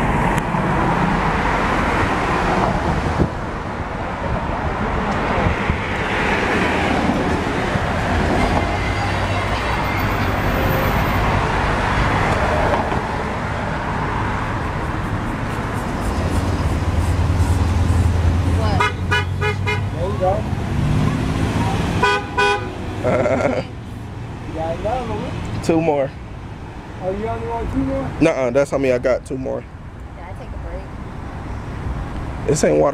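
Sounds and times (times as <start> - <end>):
loud vehicle engine passing: 0.0 - 25.6
cars and tyres rushing past: 0.0 - 28.7.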